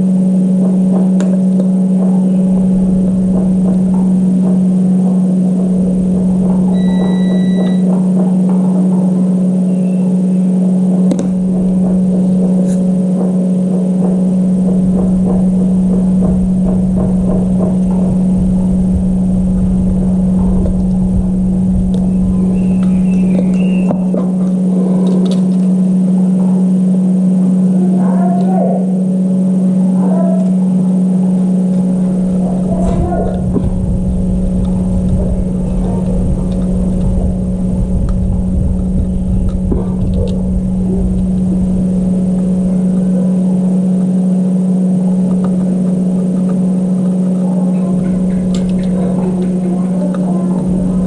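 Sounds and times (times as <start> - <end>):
rough rumble: 0.0 - 28.1, 28.9 - 51.0
loud low-pitched hum: 0.0 - 51.0
short faint beep: 6.7 - 7.9.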